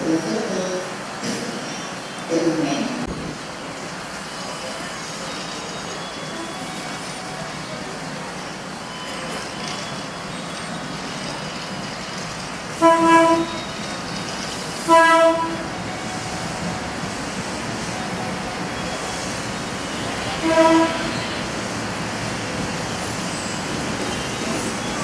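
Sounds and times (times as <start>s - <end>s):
railway rumble: 0.0s - 25.0s
train horn blasts: 12.8s - 13.6s, 14.8s - 15.8s, 20.3s - 21.3s.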